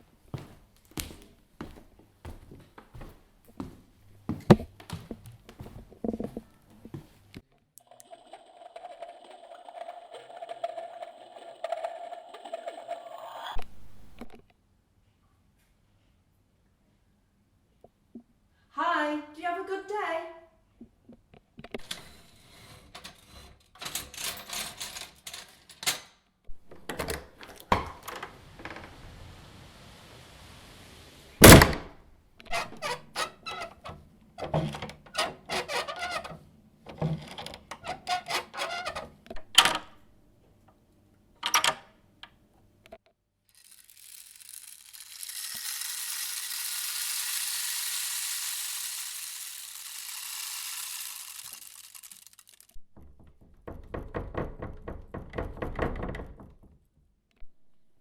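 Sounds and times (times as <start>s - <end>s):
steady hiss: 28.3s - 32.0s
loud thump: 31.4s - 32.0s
irregular clicks and knocks: 50.1s - 56.8s.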